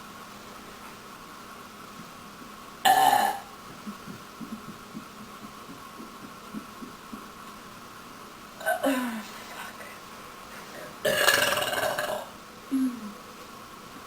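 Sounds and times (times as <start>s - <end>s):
woman belching: 2.9s - 3.5s, 8.6s - 9.2s, 11.0s - 13.1s.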